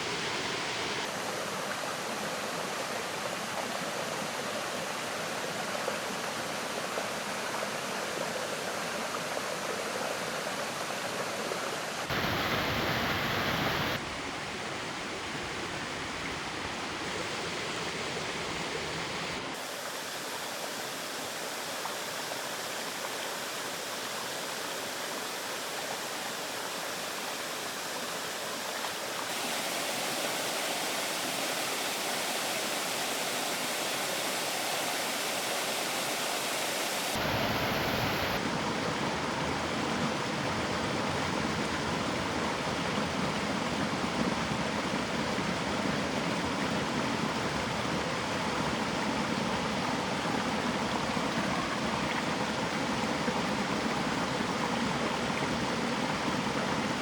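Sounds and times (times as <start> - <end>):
running water rushing: 0.0 - 57.0.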